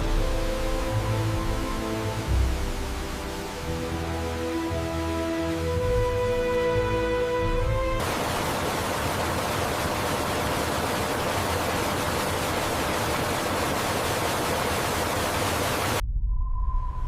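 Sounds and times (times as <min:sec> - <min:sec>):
waterfall rushing: 0:00.0 - 0:16.0
low rumble: 0:16.0 - 0:17.0.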